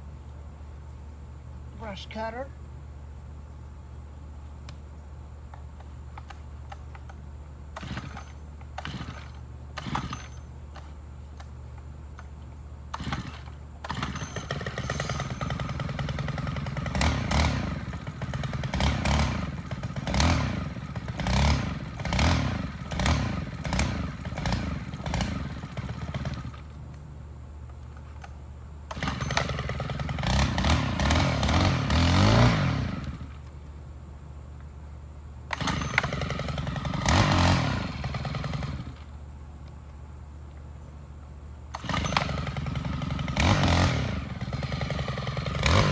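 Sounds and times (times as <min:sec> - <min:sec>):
brush cutter engine revving: 0:07.8 - 0:10.3, 0:12.9 - 0:26.7, 0:28.9 - 0:33.6, 0:35.5 - 0:39.2, 0:41.8 - 0:45.9
pull-start rattles: 0:28.9 - 0:33.5, 0:35.5 - 0:39.1, 0:41.7 - 0:45.9.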